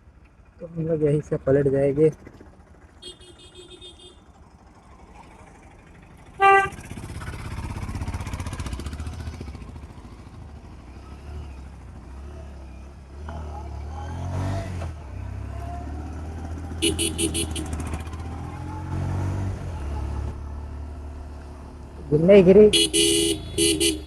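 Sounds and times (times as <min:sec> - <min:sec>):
motorcycle engine running: 0:00.1 - 0:12.2, 0:15.6 - 0:18.9, 0:19.5 - 0:24.0
loud horn honk: 0:03.0 - 0:04.2, 0:06.4 - 0:06.9, 0:16.8 - 0:18.0, 0:22.7 - 0:24.0
person talking: 0:22.0 - 0:23.0.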